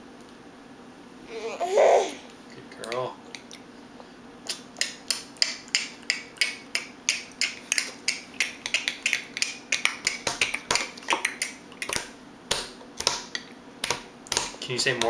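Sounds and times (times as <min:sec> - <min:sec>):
hard objects tapping and clicking: 0:08.6 - 0:15.0.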